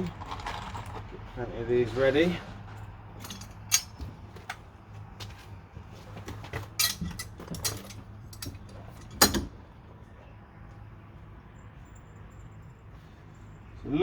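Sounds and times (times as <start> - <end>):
small metal screws clinking: 3.2 - 4.0, 6.8 - 9.5.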